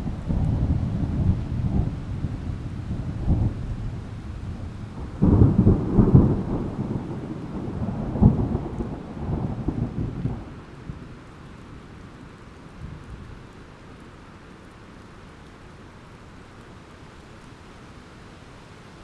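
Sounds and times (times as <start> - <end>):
thunder rumbling: 0.0 - 11.2
steady rain: 0.0 - 19.0.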